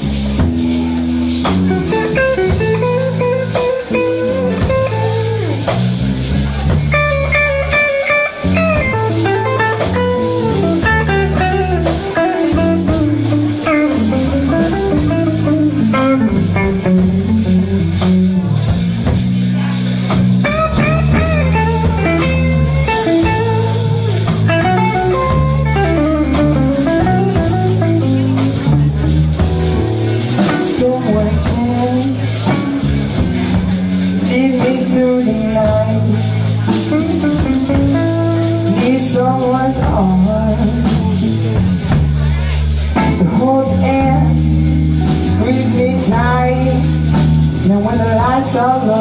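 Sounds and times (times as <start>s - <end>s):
lead guitar melody: 0.0s - 49.0s
live blues band playing: 0.0s - 49.0s.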